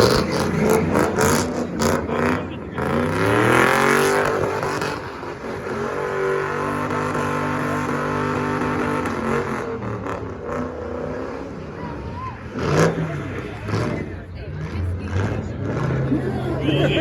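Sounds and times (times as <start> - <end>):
car engine revving: 0.0 - 17.0.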